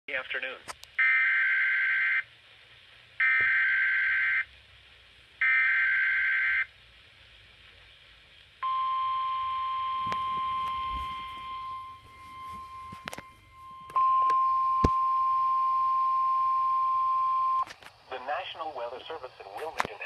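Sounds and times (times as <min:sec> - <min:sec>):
radio static crackles: 0:00.1 - 0:06.9, 0:07.6 - 0:16.8, 0:17.5 - 0:20.0
steady warning alarm tone: 0:01.0 - 0:02.3, 0:03.2 - 0:04.5, 0:05.4 - 0:06.7, 0:08.6 - 0:17.6
data bursts: 0:08.6 - 0:17.6.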